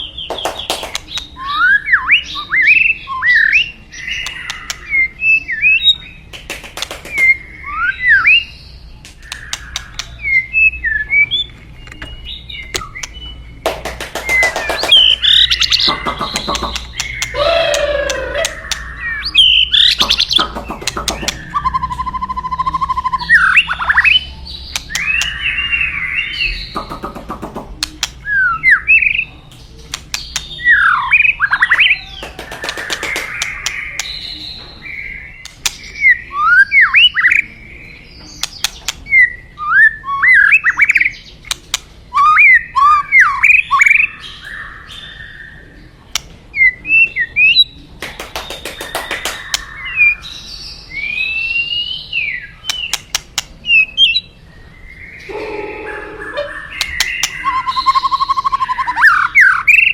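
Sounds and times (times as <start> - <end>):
bird clicking calls: 0.0 - 1.4, 4.2 - 4.9, 6.3 - 7.5, 9.0 - 10.4, 11.4 - 22.5, 24.7 - 25.4, 26.5 - 28.3, 29.5 - 30.7, 31.6 - 34.2, 35.4 - 36.0, 38.4 - 39.2, 41.4 - 41.9, 46.1 - 46.3, 47.9 - 49.8, 52.6 - 53.6, 56.8 - 58.4
bird singing whistled notes: 53.6 - 59.9.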